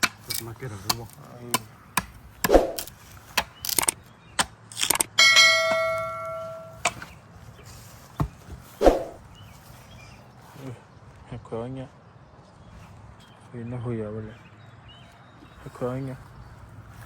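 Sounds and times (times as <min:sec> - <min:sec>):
metal object ringing like bell: 0:05.2 - 0:06.8.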